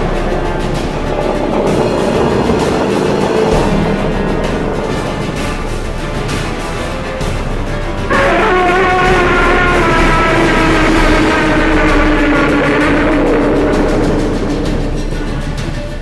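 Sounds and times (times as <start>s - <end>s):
dense low rumble: 0.0s - 16.0s
dramatic battle music: 0.0s - 16.0s
heavy distorted sustained chord: 0.0s - 16.0s.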